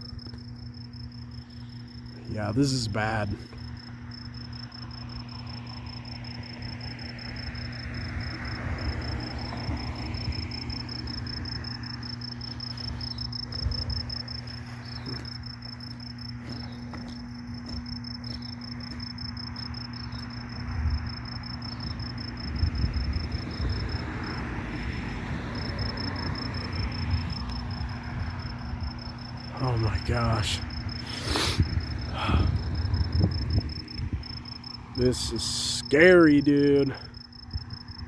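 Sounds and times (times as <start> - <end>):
crickets trilling: 0.0 - 38.0
steady low hum: 0.0 - 38.0
uneven low rumbling: 8.0 - 35.3.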